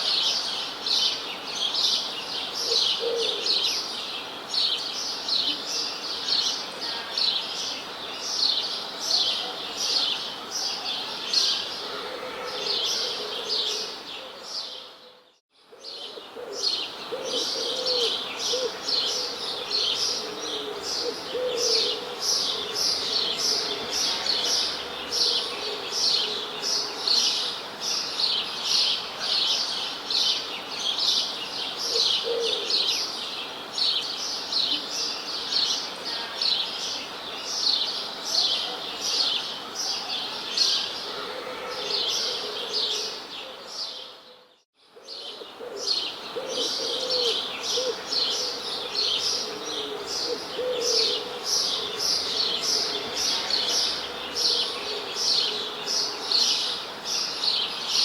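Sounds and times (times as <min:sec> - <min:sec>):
lower bird calls: 0:40.6 - 0:57.5.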